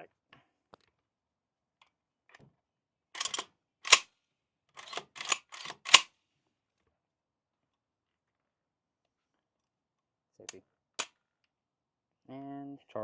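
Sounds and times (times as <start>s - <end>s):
metal action sliding and rattling: 3.2s - 4.0s, 4.8s - 6.1s
sharp metallic clack: 3.2s - 4.0s, 4.8s - 6.1s.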